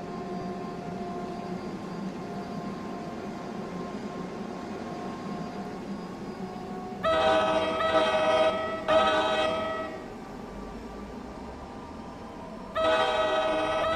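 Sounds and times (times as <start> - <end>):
train rumble: 0.0 - 13.9
locomotive air horn: 7.0 - 10.1, 12.8 - 13.9.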